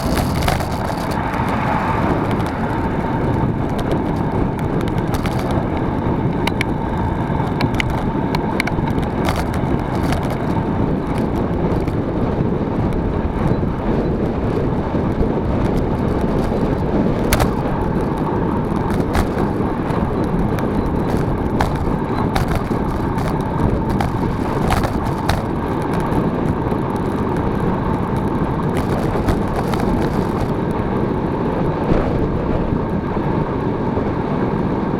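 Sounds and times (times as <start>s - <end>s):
clicks and rattles: 0.0s - 12.0s, 15.6s - 30.8s
vehicle rumbling: 0.0s - 34.9s.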